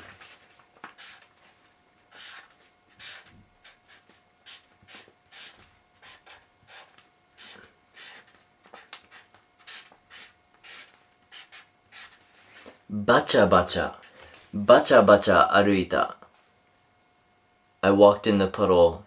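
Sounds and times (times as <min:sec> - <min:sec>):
pen scratching on paper: 0:00.9 - 0:01.3, 0:02.1 - 0:12.2.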